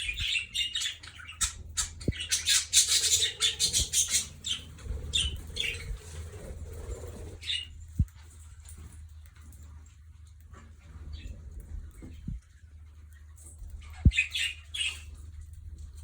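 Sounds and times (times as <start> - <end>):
parrots chirping: 0.0 - 7.7.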